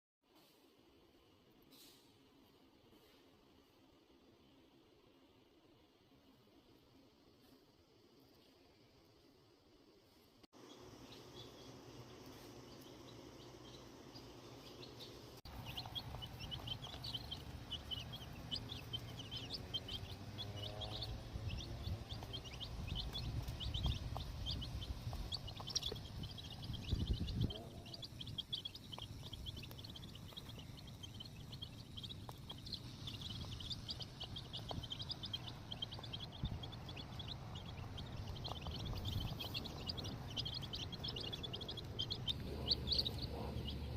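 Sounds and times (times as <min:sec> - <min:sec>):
chicks peeping and chirping: 0:10.6 - 0:43.9
low rumble: 0:15.5 - 0:43.9.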